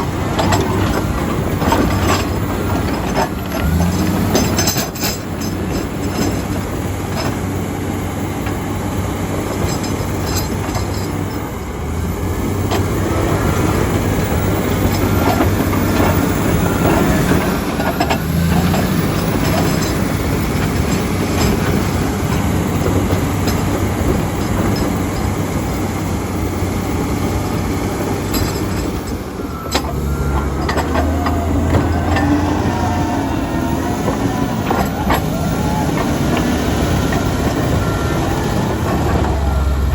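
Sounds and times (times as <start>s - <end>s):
diesel engine under load: 0.0s - 39.9s
steel tracks clanking: 0.0s - 39.9s
metallic squeals: 28.3s - 39.9s.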